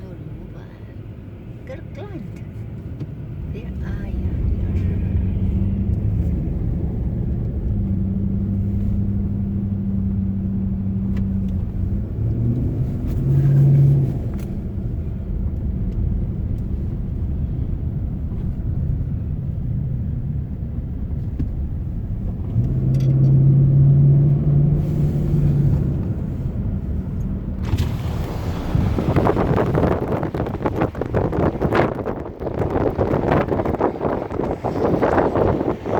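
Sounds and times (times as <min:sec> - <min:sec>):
engine running: 0:00.0 - 0:35.9
rushing wind-like noise: 0:24.9 - 0:35.9.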